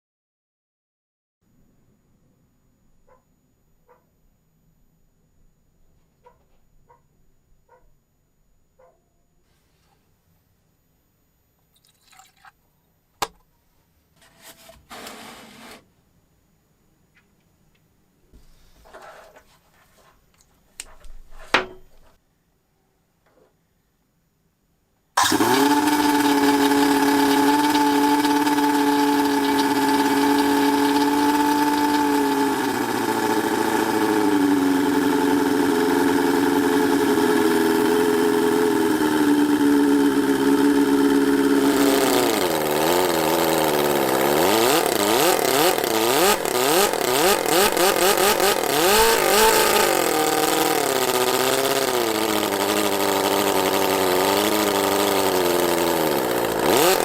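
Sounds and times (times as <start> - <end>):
model engine revving: 25.2 - 57.0.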